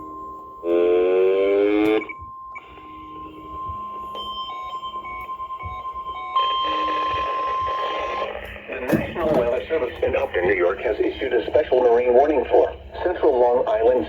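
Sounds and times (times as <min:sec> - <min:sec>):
buzzy rising tone: 0:00.0 - 0:02.1
steady high warning beep: 0:00.0 - 0:13.9.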